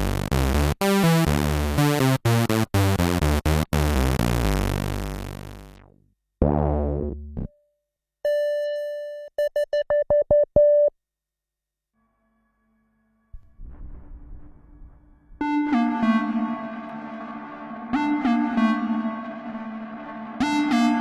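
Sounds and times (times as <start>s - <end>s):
synthesizer notes: 14.4s - 21.0s.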